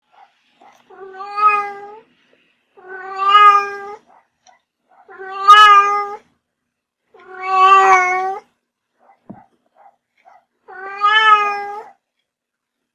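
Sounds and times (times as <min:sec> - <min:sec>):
cat meowing: 0:00.8 - 0:02.1, 0:02.8 - 0:04.1, 0:05.0 - 0:06.3, 0:07.2 - 0:08.5, 0:10.7 - 0:12.0.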